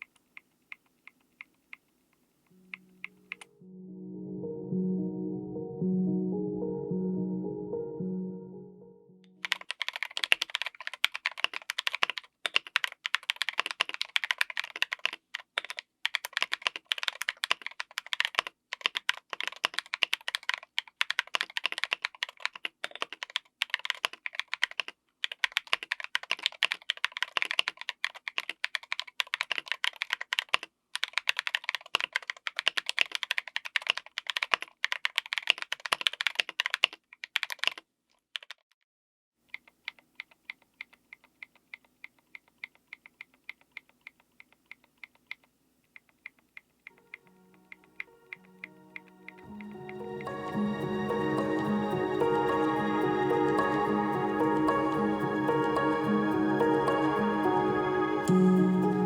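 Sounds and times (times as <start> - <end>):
fast typing on mechanical keyboard: 0.0 - 1.8, 9.4 - 38.7, 39.5 - 49.4.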